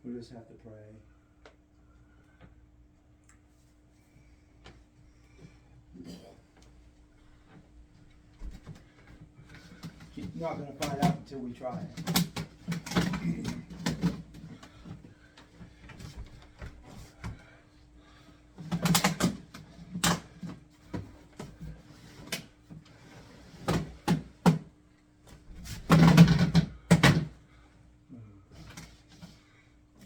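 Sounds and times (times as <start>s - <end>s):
faint steady hum: 0.0s - 30.0s
air conditioner clicks and clatter: 7.4s - 27.7s, 28.6s - 30.0s.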